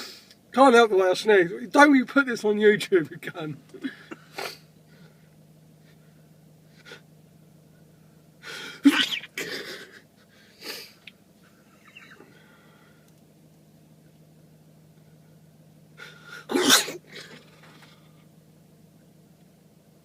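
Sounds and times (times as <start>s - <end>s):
faint steady hum: 0.0s - 20.0s
man sneezing: 3.8s - 4.7s, 8.6s - 10.0s, 16.3s - 18.0s.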